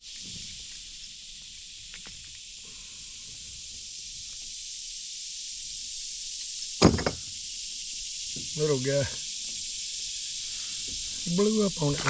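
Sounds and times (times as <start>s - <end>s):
high-pitched insect chorus: 0.0s - 12.0s
sharp knock: 6.8s - 7.2s.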